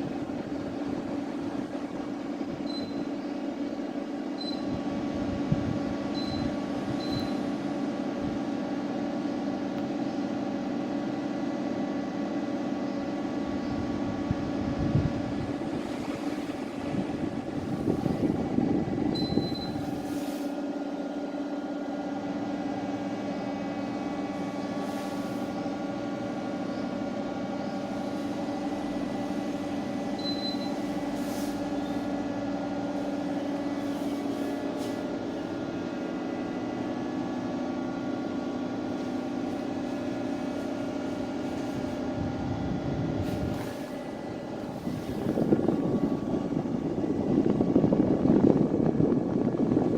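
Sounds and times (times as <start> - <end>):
air conditioner humming: 0.0 - 49.9.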